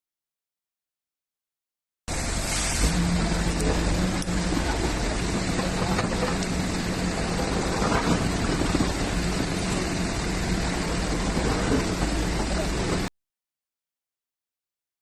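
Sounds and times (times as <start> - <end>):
low machinery hum: 2.1 - 13.1.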